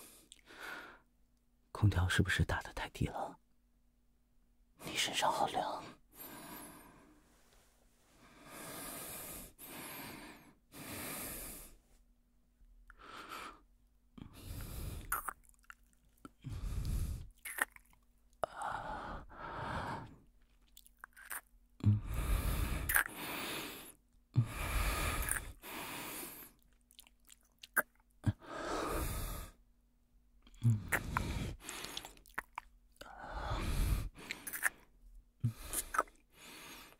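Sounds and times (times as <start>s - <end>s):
close breathing: 0.0s - 1.1s, 5.6s - 12.0s, 12.9s - 15.3s, 16.3s - 17.4s, 18.4s - 20.3s, 21.9s - 26.6s, 28.2s - 29.6s, 30.5s - 32.3s, 33.0s - 36.9s
lip clicks: 15.1s - 16.0s, 17.4s - 18.0s, 22.8s - 23.2s, 25.2s - 25.5s, 30.5s - 32.7s, 34.2s - 34.9s, 35.5s - 36.2s.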